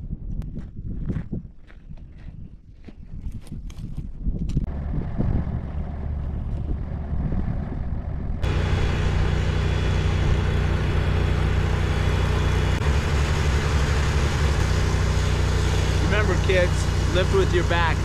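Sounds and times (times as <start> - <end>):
excavator diesel engine running: 4.7 - 18.0.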